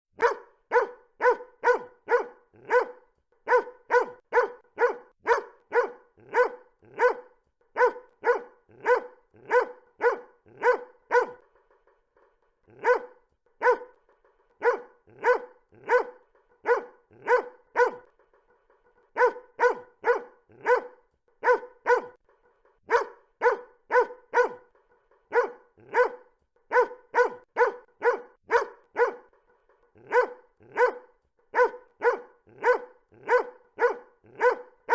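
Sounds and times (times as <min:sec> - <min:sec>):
dog barking loudly: 0:00.2 - 0:11.5, 0:12.7 - 0:14.0, 0:14.6 - 0:18.1, 0:19.2 - 0:22.2, 0:22.9 - 0:29.4, 0:30.0 - 0:34.9.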